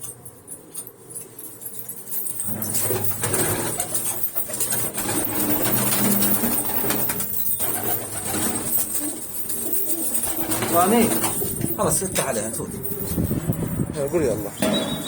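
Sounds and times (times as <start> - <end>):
pigeons cooing: 2.6 - 12.0, 14.5 - 15.0.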